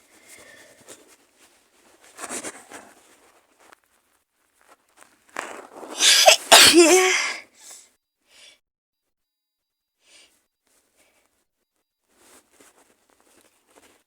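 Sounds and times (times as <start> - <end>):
faint breaths: 0.0 - 1.5, 7.0 - 8.6, 10.0 - 11.4
woman sneezing: 6.0 - 7.5
woman gasping in-breath: 6.0 - 7.8.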